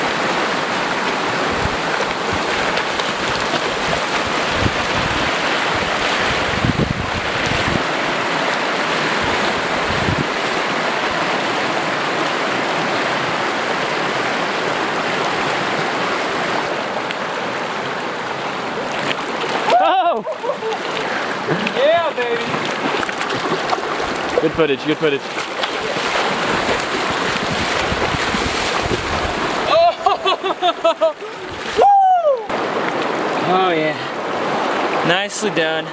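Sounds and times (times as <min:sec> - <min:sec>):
rushing river water: 0:00.0 - 0:35.9
wind rumble on microphone: 0:01.3 - 0:07.9, 0:09.0 - 0:10.4, 0:26.4 - 0:29.7.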